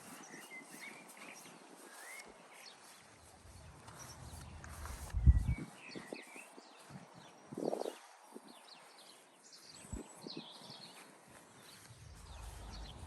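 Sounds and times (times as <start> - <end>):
small birds chirping: 0.0 - 13.0
low rumble: 11.9 - 13.0.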